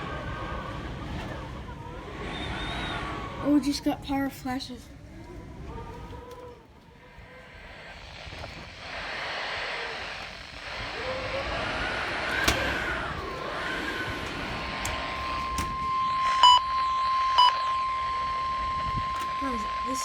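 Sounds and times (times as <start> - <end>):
strong wind gusting: 0.0 - 20.0
sharp click: 12.3 - 12.7
high alert tone: 15.2 - 20.0
short loud beeps: 15.6 - 20.0.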